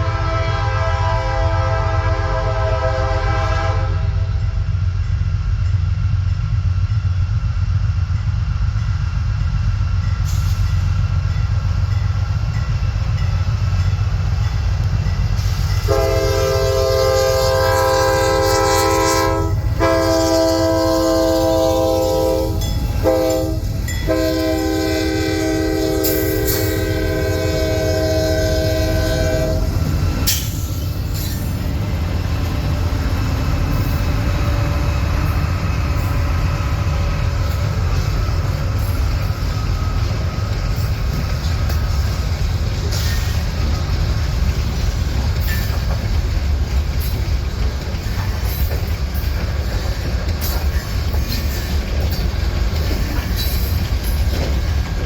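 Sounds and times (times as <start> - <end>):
train air horn blasts: 0.0 - 4.6, 15.5 - 30.4
diesel locomotive rumbling past: 0.0 - 55.0.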